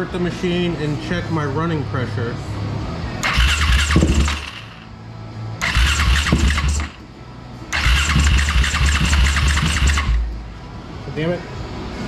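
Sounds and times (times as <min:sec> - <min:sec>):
engine cranking on electric starter: 0:03.2 - 0:04.8, 0:05.6 - 0:07.0, 0:07.7 - 0:10.3.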